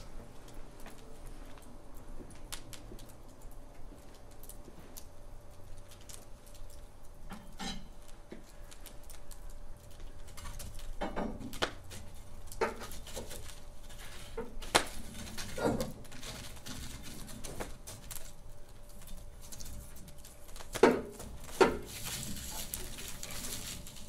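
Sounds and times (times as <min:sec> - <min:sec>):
low steady fire hiss: 0:00.0 - 0:24.0
wood fire crackling: 0:00.0 - 0:24.0.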